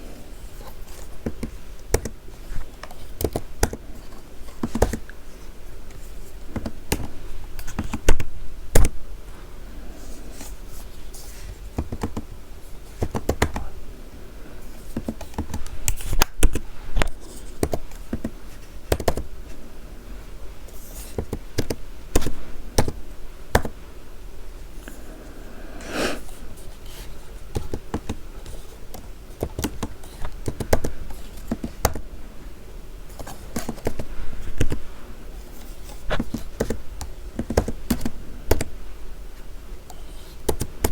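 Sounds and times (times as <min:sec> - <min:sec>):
computer keyboard typing: 0:11.8 - 0:12.3, 0:13.0 - 0:13.7, 0:17.6 - 0:19.3, 0:21.2 - 0:23.8, 0:27.5 - 0:32.0, 0:36.1 - 0:36.8, 0:37.4 - 0:38.7.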